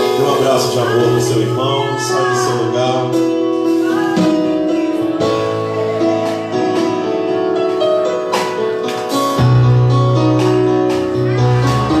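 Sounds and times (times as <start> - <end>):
guitar chords: 0.0 - 12.0
held keyboard chords: 0.0 - 12.0.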